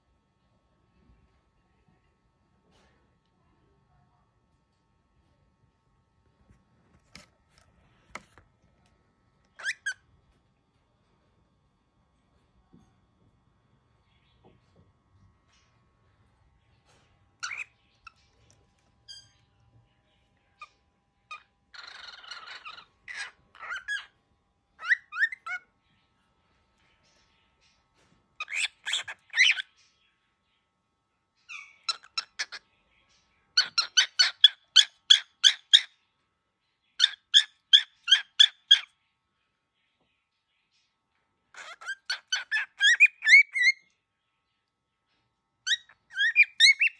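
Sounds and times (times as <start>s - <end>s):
cockatiel sharp squawks: 9.6s - 10.0s, 17.4s - 17.7s, 20.6s - 24.2s, 28.4s - 29.7s, 33.6s - 35.9s, 41.5s - 43.8s, 45.7s - 46.9s
cockatiel squeaky calls: 9.6s - 10.0s, 17.4s - 18.3s, 19.1s - 19.5s, 20.6s - 24.2s, 24.8s - 25.6s, 28.4s - 29.8s, 31.4s - 32.6s, 33.6s - 36.0s, 37.0s - 38.9s, 41.5s - 43.9s, 45.6s - 46.9s.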